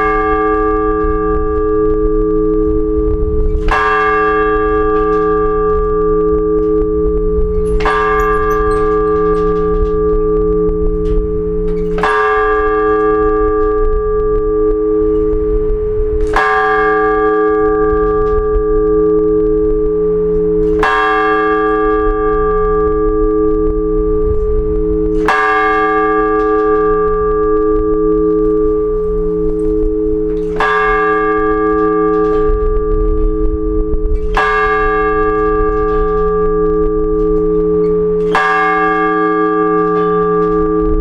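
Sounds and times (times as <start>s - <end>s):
large church bell ringing: 0.0s - 41.0s.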